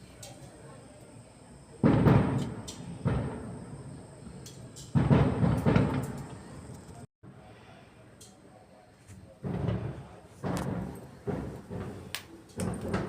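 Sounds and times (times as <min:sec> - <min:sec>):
thunder booming: 0:01.8 - 0:04.3, 0:04.9 - 0:06.8, 0:09.4 - 0:13.0.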